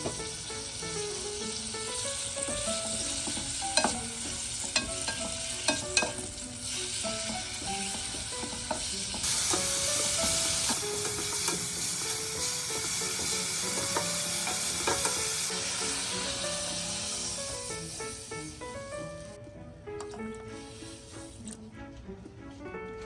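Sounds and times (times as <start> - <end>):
food sizzling in a pot: 0.0 - 22.7
utensil clicking against pot: 1.7 - 15.6, 20.0 - 20.4.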